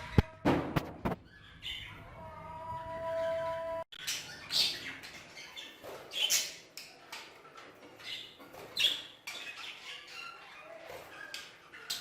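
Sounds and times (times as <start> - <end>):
loud budgerigar calls: 4.0 - 6.6.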